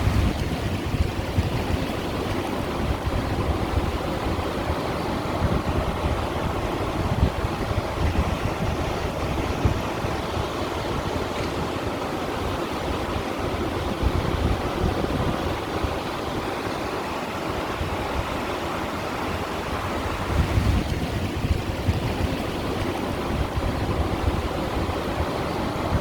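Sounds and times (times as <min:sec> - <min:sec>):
sea water washing over stones: 0:00.0 - 0:04.7, 0:18.4 - 0:25.2.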